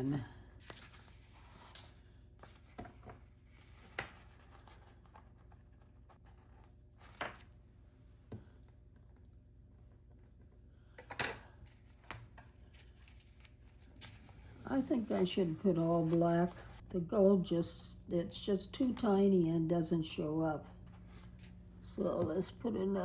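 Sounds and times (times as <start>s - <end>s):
room hum: 0.0s - 23.0s
paper sheets rustling: 0.6s - 5.5s, 11.7s - 16.8s.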